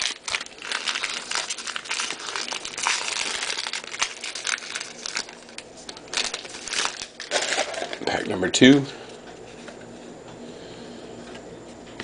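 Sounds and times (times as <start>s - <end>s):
plastic foil wrapper crinkling: 0.0s - 8.9s.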